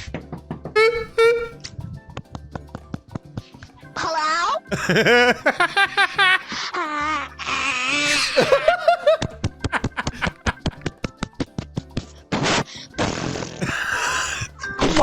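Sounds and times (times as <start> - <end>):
person laughing: 0.8 - 1.6, 4.7 - 11.4, 13.6 - 14.5.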